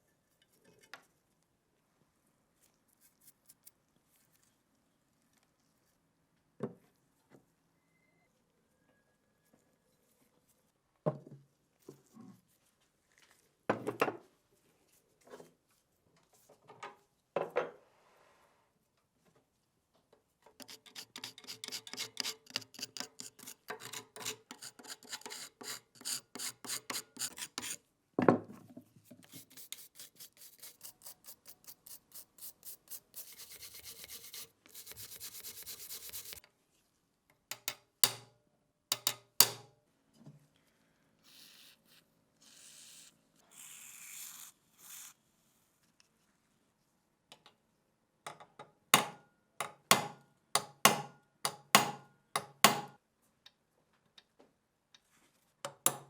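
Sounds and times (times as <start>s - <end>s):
hand scraping rusty metal: 20.6s - 27.8s, 33.1s - 36.4s.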